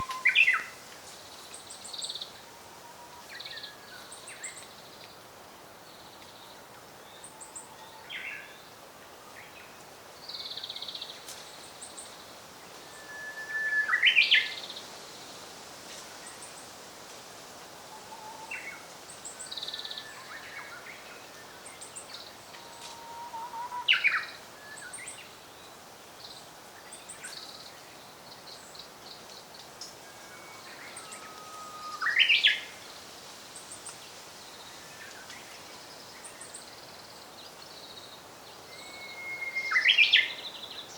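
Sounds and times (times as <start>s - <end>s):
faint high bird chirps: 0.0s - 0.7s
robin singing: 0.0s - 0.8s, 37.8s - 40.9s.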